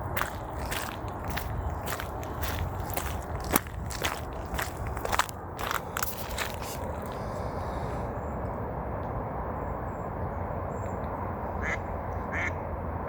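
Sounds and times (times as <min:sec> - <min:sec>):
footsteps crunching on a trail: 0:00.0 - 0:07.4.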